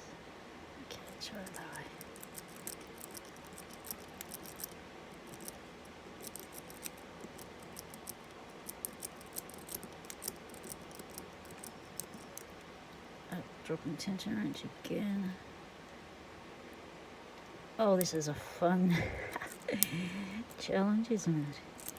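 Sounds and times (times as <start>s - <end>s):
lock pick clicking and scraping: 2.0s - 5.6s, 6.2s - 12.6s.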